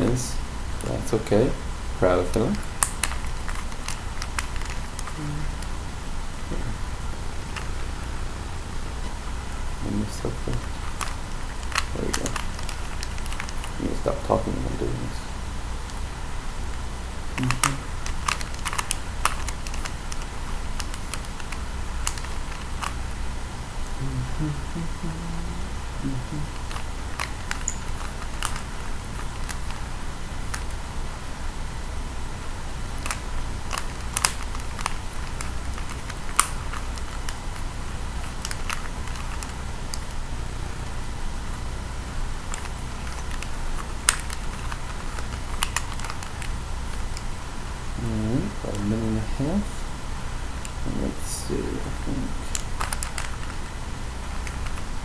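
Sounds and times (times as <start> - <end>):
steady low hum: 0.0 - 55.0
puzzle cube twisting clicks: 10.8 - 13.8, 17.4 - 23.0, 26.6 - 29.8, 33.0 - 40.2, 42.4 - 47.3, 52.5 - 53.5.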